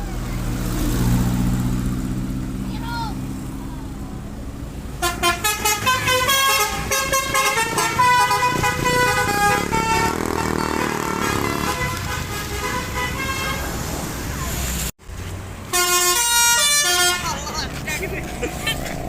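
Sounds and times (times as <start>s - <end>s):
bus horn playing musical notes: 5.0s - 13.7s, 15.7s - 17.6s.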